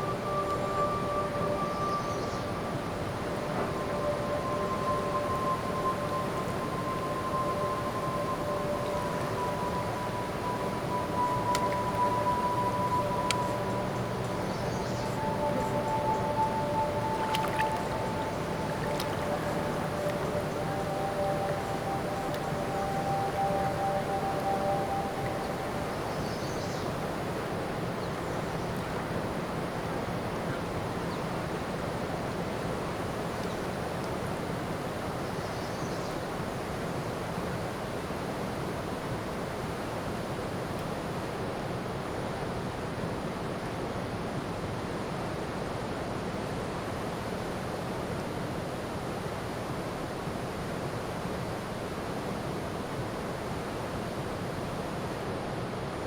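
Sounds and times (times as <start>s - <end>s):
ocean surf rushing: 2.6s - 26.2s.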